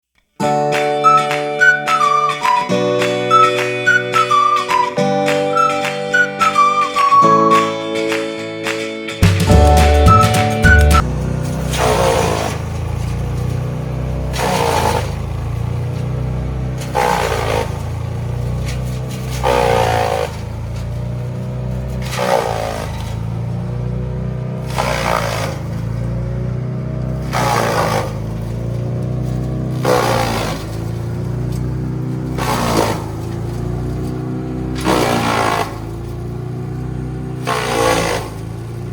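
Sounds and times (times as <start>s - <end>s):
wood chipper running: 0.4s - 8.2s, 9.2s - 38.9s
wood chipping bursts: 9.2s - 38.9s.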